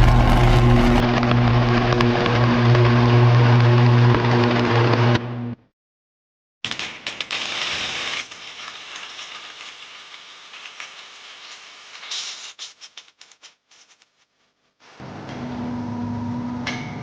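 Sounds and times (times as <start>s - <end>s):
electric arc crackling: 0.0s - 4.6s, 6.7s - 14.0s.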